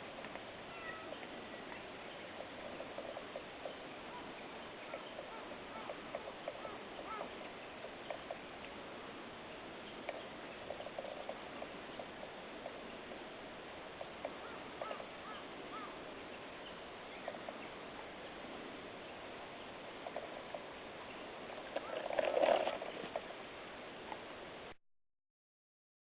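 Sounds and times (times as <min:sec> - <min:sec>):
steady outdoor hiss: 0:00.0 - 0:24.8
cat meowing: 0:00.7 - 0:01.2.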